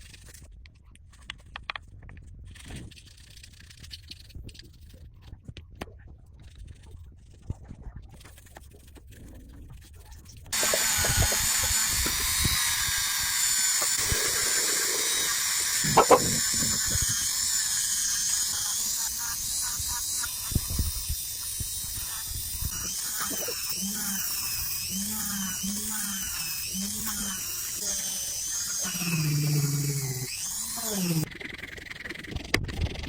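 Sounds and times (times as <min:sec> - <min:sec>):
hiss with high whine: 0:10.6 - 0:31.3.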